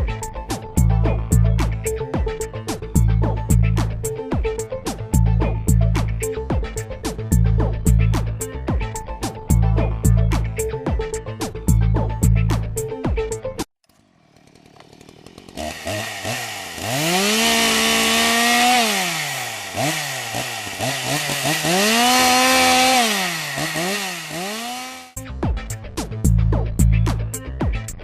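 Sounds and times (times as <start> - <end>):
music: 0.0 - 13.7, 25.2 - 28.0
chainsaw engine revving: 13.8 - 25.2.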